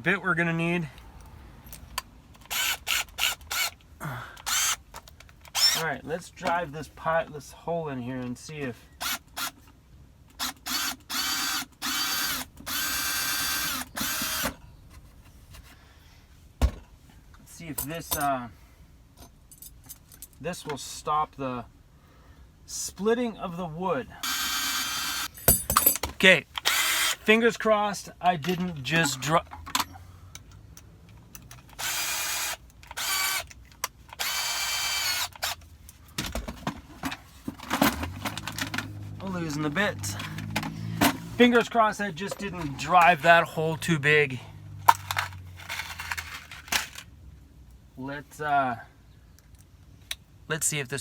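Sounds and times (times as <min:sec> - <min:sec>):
power drill boring into wood: 0:02.5 - 0:03.7, 0:04.4 - 0:04.8, 0:05.5 - 0:05.8, 0:10.4 - 0:14.6, 0:24.2 - 0:25.3, 0:26.6 - 0:27.2, 0:31.8 - 0:33.5, 0:34.2 - 0:35.6.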